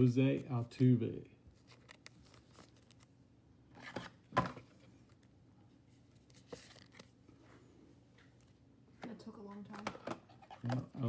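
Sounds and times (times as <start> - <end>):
cards rustling and scraping: 0.4 - 3.1, 3.7 - 5.3, 6.0 - 7.5.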